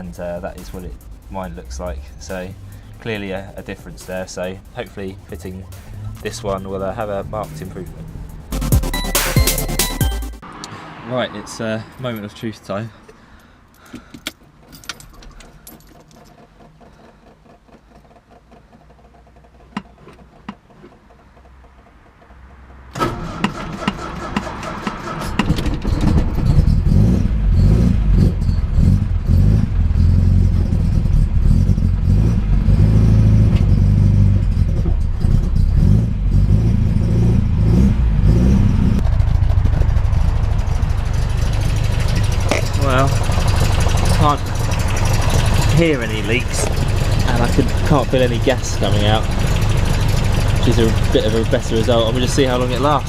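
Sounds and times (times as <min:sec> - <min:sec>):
car engine starting and revving: 0:00.0 - 0:12.3, 0:14.6 - 0:53.0
keys jingling: 0:13.4 - 0:16.9.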